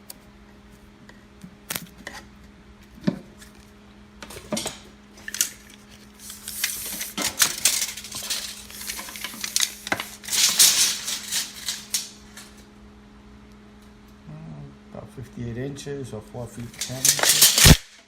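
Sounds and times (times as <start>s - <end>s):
packaging rustling: 5.2s - 12.1s.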